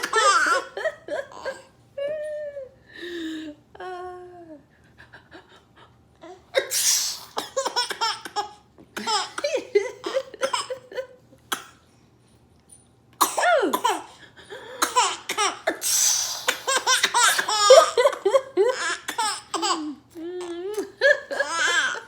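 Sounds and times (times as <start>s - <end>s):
baby laughing: 0.0s - 1.7s, 16.6s - 20.0s, 20.7s - 22.0s
woman's pretend sneeze: 6.6s - 7.5s, 15.7s - 17.6s.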